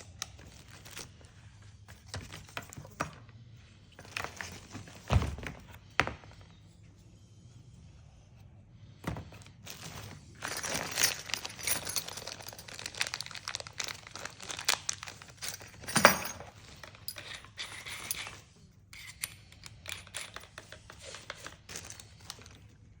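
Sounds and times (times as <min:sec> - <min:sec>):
packaging crinkling and rustling: 0:09.5 - 0:17.1, 0:20.4 - 0:22.7.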